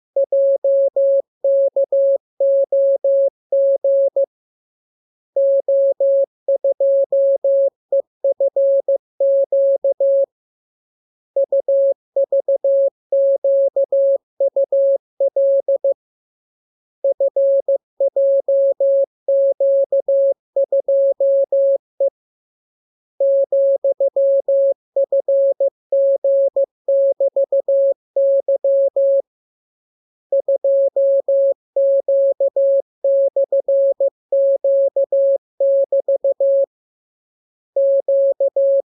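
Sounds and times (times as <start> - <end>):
morse code beeps: 30.3 - 36.7, 37.8 - 38.9.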